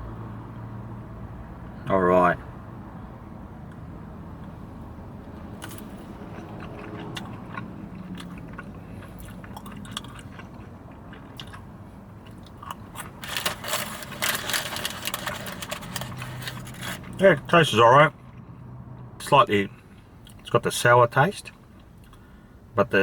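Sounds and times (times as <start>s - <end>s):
wet mouth clicks and crunches: 5.6s - 13.3s
person chewing crunchy food: 5.6s - 17.2s.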